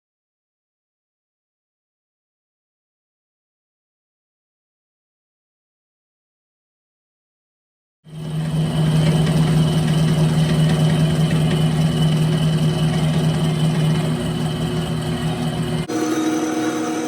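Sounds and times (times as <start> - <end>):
milling machine running: 8.1 - 17.0.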